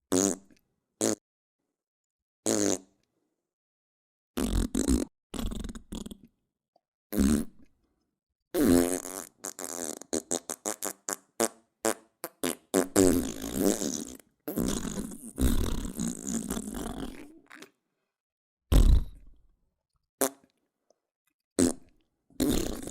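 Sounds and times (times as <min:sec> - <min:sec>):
fart sounds: 0:00.1 - 0:01.2, 0:02.4 - 0:02.9, 0:04.4 - 0:06.2, 0:07.1 - 0:07.7, 0:08.6 - 0:17.6, 0:18.7 - 0:19.4, 0:21.6 - 0:22.9.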